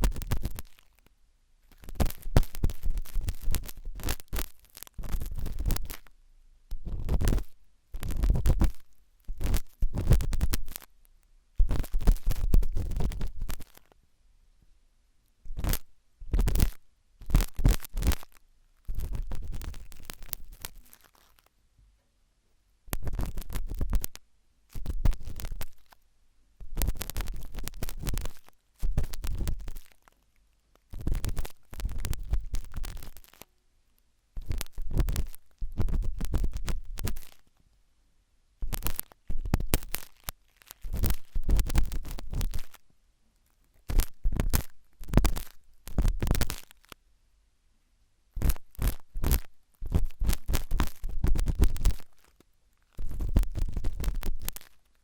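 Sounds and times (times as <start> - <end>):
toothpick scratching inside ear: 1.7 - 6.1, 6.8 - 10.9, 11.6 - 13.9, 15.5 - 21.4, 23.0 - 26.0, 26.8 - 30.0, 30.9 - 33.5, 34.4 - 37.4, 38.7 - 42.8, 43.8 - 46.9, 48.4 - 52.3, 53.0 - 54.8.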